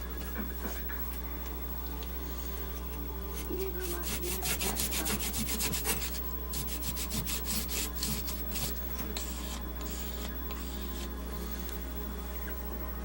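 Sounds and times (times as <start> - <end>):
rubbing residue off speaker cone: 3.4 - 11.1.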